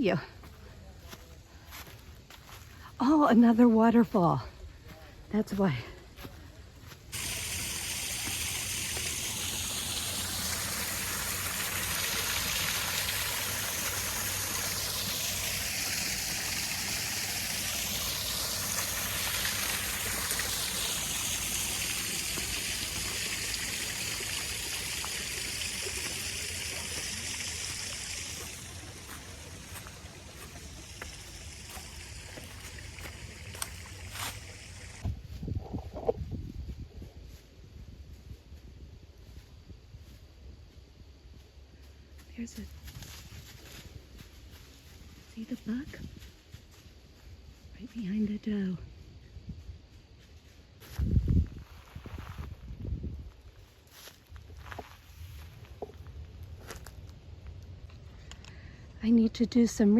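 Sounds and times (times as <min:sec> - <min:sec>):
waterfall rushing: 0:07.2 - 0:35.0.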